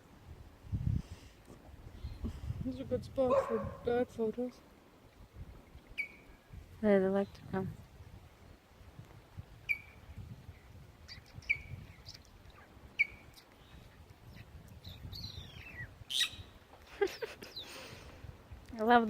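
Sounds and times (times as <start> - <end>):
wren chirping: 5.9 - 6.5, 9.6 - 16.6.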